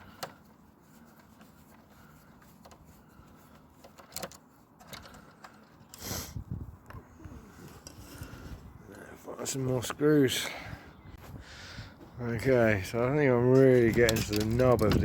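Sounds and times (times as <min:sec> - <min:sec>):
plastic parts clicking and knocking: 0:00.0 - 0:00.5, 0:01.2 - 0:06.0, 0:13.8 - 0:15.0.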